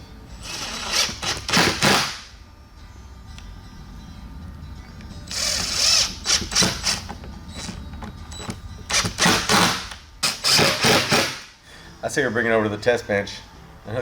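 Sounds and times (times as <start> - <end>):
power tool running: 8.9 - 11.5.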